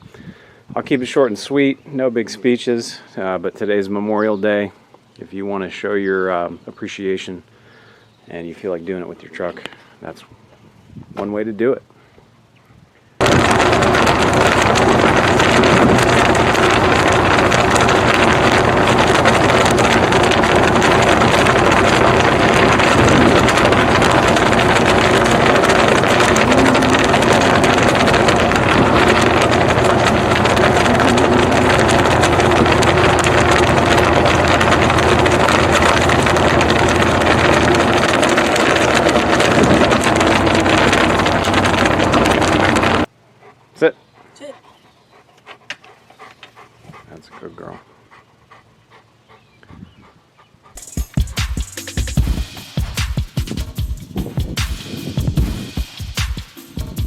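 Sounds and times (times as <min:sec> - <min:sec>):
wind noise on microphone: 0:00.0 - 0:00.9, 0:10.6 - 0:11.2, 0:12.7 - 0:43.1, 0:49.6 - 0:50.1, 0:52.2 - 0:57.0
truck engine and road noise: 0:11.8 - 0:44.8.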